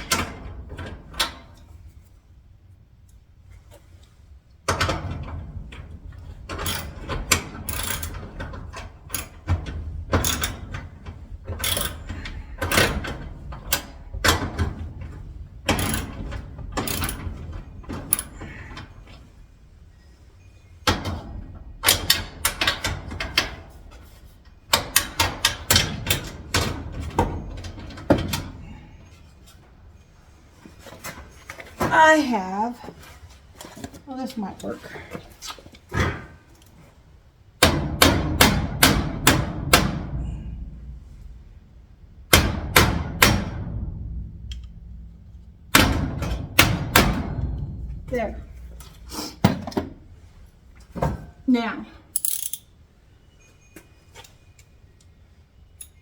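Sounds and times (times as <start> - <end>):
metallic clicks and rattles of lock: 6.5 - 14.5, 15.7 - 18.5, 52.1 - 52.7, 55.8 - 56.0.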